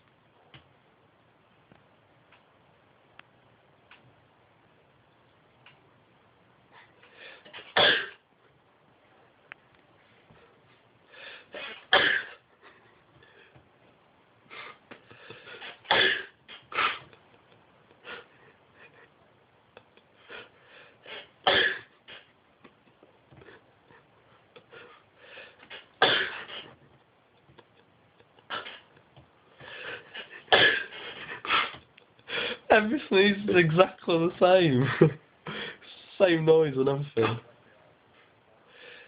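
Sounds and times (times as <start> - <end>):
soft breaths: 6.6 - 7.6, 9.0 - 15.8, 16.6 - 21.4, 22.0 - 33.3, 37.5 - 39.0.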